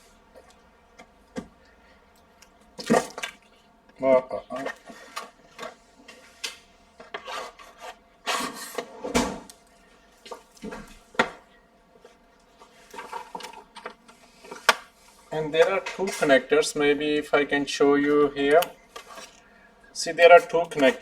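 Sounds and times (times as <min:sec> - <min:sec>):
rubbing and scraping with clicks: 0:04.5 - 0:09.0, 0:12.0 - 0:16.4, 0:18.0 - 0:19.5.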